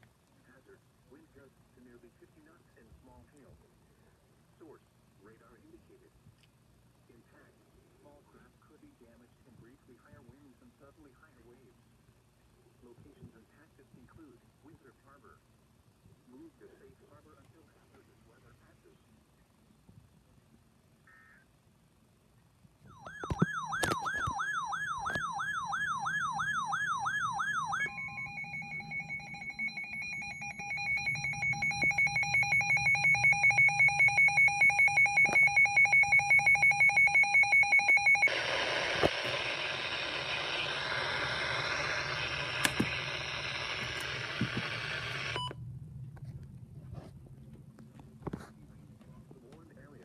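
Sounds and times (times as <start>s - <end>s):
two-pitch pulsing alert tone: 22.9s - 38.3s
warbling alert tone: 22.9s - 38.6s
harsh static hiss: 38.2s - 45.4s.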